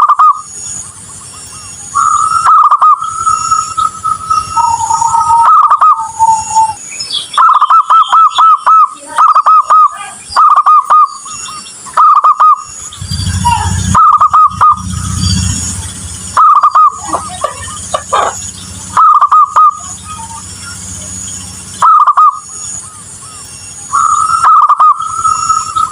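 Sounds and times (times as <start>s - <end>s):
dove cooing: 2.0s - 6.8s, 12.0s - 20.9s, 21.8s - 22.5s, 23.2s - 25.9s.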